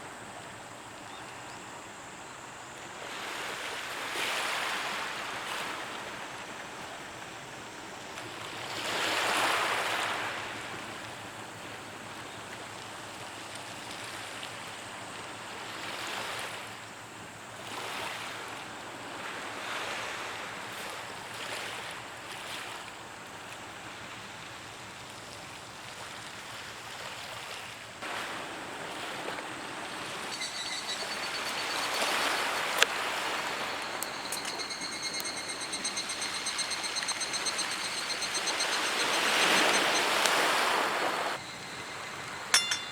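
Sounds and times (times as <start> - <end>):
waves washing on a beach: 2.8 - 42.5
fast high-pitched ticking: 30.3 - 40.5.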